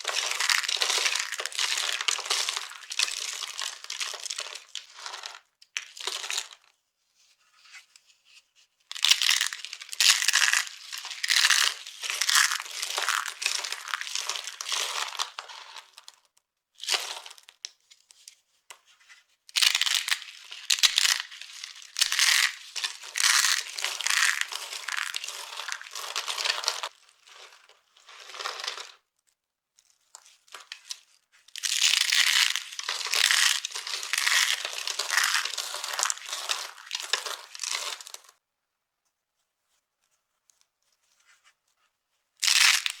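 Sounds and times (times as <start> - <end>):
dry soap crunching and crumbling: 0.0 - 6.7, 8.9 - 17.7, 19.5 - 29.1, 29.8 - 38.4, 42.4 - 43.0.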